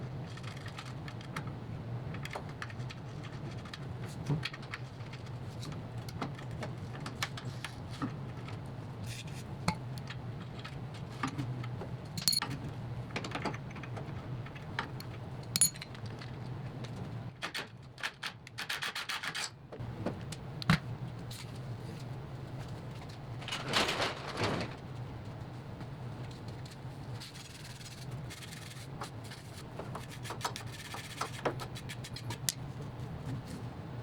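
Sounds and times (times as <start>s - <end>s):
tools clicking and knocking: 12.2s - 12.5s, 15.6s - 16.1s
ringing metallic clinks: 15.6s - 15.9s.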